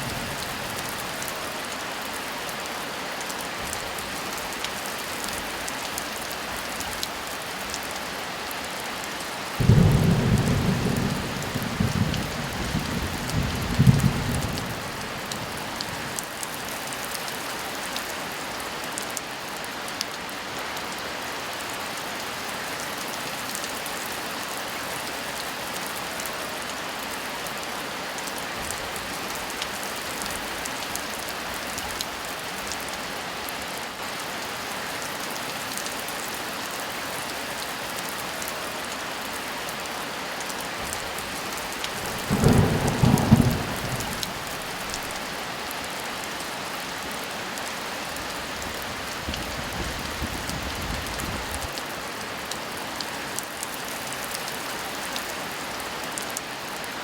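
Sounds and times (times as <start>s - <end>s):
heavy rain: 0.0s - 57.0s
thunder rumble: 42.0s - 45.2s.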